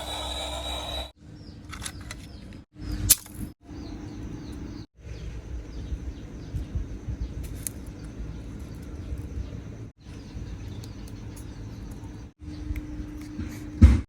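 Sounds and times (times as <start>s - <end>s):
steady low rumble: 3.8s - 13.3s.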